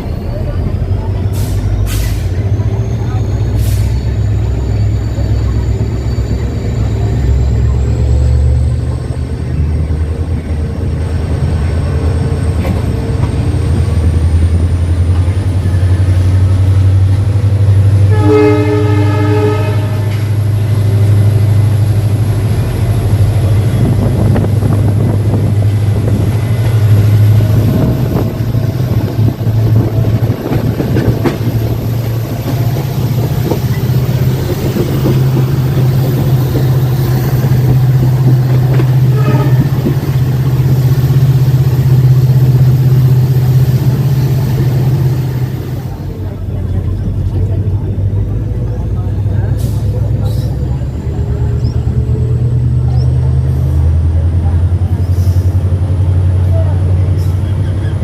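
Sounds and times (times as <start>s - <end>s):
diesel locomotive engine drone: 0.0s - 58.0s
train horn blast: 17.9s - 21.0s, 38.7s - 40.3s.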